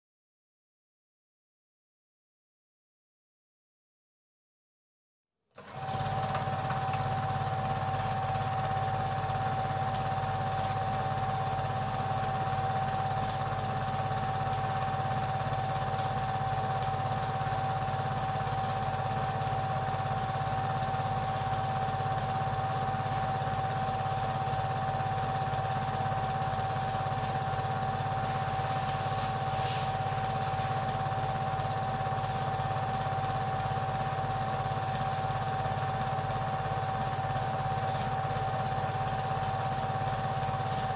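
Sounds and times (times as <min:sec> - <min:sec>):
film projector motor whine: 0:05.6 - 0:40.9
film mechanism clatter: 0:06.4 - 0:08.6.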